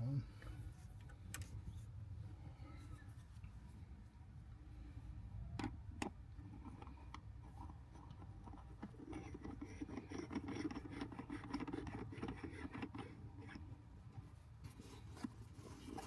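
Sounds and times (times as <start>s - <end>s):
close scratching and rattling: 6.0s - 16.0s.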